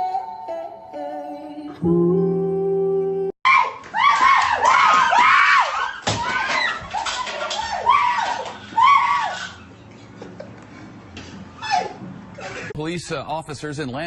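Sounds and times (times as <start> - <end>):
tune with long held note: 0.0 - 3.4.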